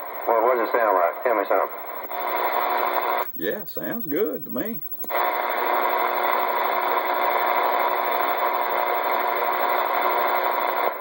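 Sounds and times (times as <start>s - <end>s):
radio static hiss: 0.0s - 7.2s
faint steady tones: 0.0s - 11.0s.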